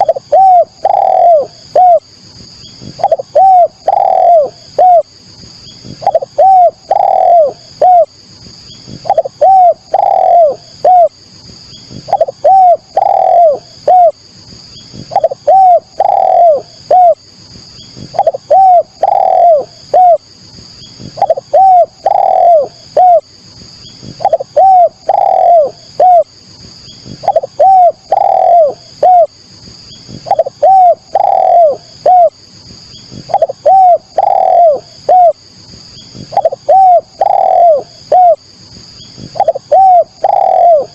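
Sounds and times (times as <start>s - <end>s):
dove cooing: 0.0s - 2.1s, 2.8s - 5.1s, 5.8s - 8.1s, 8.9s - 11.2s, 11.9s - 14.2s, 14.9s - 17.2s, 18.0s - 20.3s, 21.0s - 23.3s, 24.0s - 26.3s, 27.0s - 29.4s, 30.1s - 32.4s, 33.1s - 35.4s, 36.2s - 38.4s, 39.2s - 40.9s.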